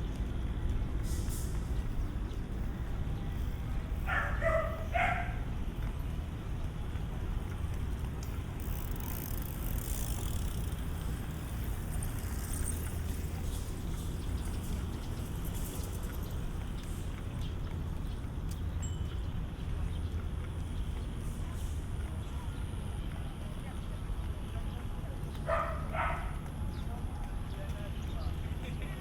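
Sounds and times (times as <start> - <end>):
low rumble of traffic: 0.0 - 29.0.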